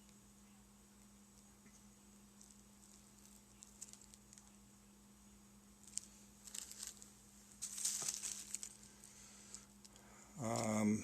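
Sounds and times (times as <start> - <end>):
plastic bag crinkling: 2.3 - 4.6, 5.8 - 10.0.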